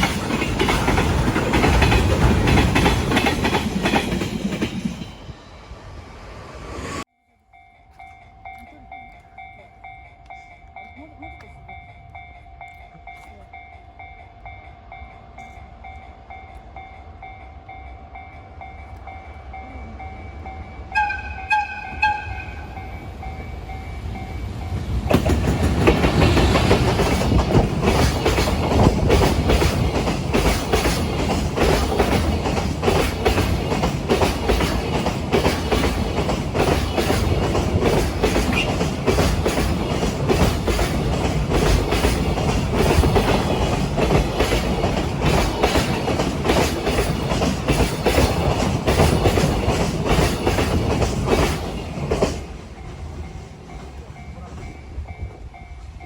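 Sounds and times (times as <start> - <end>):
train wheels clacking over rail joints: 0.0 - 5.2, 24.7 - 55.6
locomotive horn blasts: 20.9 - 22.8.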